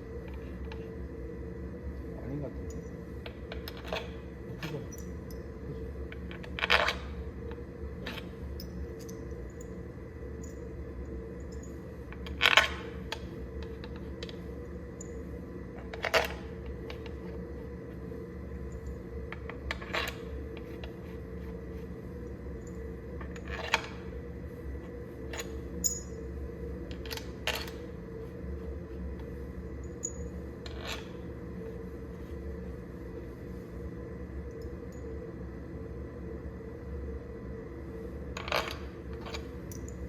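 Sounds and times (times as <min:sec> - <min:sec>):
boring machine hum: 0:00.0 - 0:40.0.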